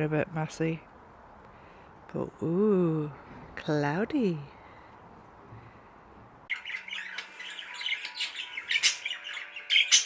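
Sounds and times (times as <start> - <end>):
budgerigars chattering and squawking: 6.5 - 10.0.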